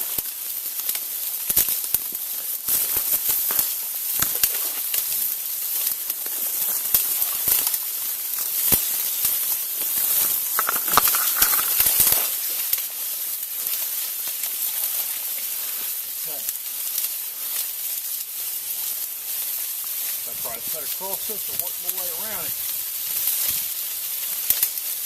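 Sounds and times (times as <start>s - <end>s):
footsteps through brush and leaves: 10.0s - 16.0s, 16.6s - 25.0s.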